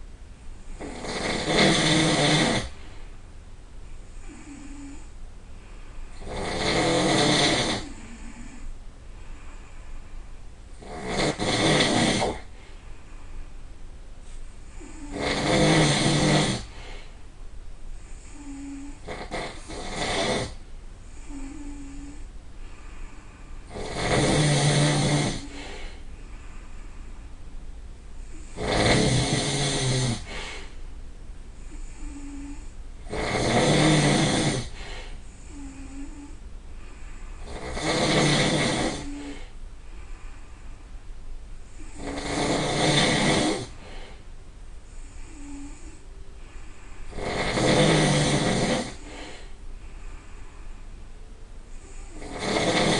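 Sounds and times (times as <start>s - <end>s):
person snoring loudly: 0.7s - 2.8s, 4.2s - 5.1s, 6.2s - 8.7s, 10.8s - 12.5s, 14.7s - 17.0s, 18.2s - 20.6s, 21.2s - 22.2s, 23.6s - 26.0s, 28.3s - 30.7s, 31.7s - 36.4s, 37.4s - 39.5s, 41.8s - 44.2s, 45.1s - 49.6s, 51.8s - 52.9s.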